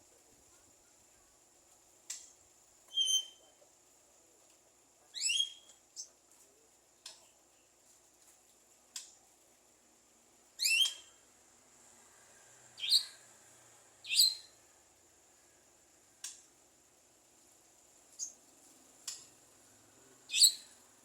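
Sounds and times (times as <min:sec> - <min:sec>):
bird chirping high-pitched: 0:02.9 - 0:03.4, 0:10.6 - 0:11.1, 0:14.1 - 0:14.5, 0:20.3 - 0:20.8.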